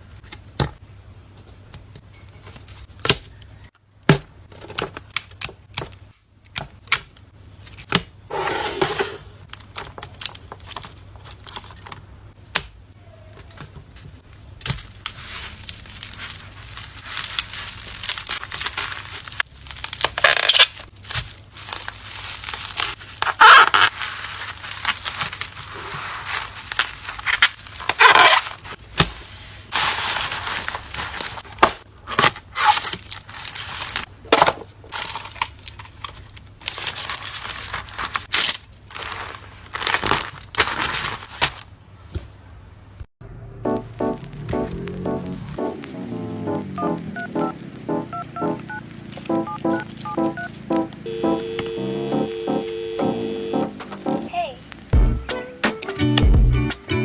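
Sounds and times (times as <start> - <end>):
plastic packaging crinkling: 14.7 - 28.8, 34.9 - 41.7.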